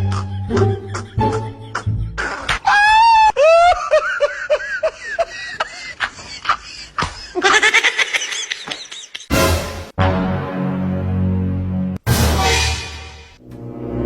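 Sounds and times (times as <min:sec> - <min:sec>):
high-pitched cartoonish laughing: 0:00.0 - 0:05.0.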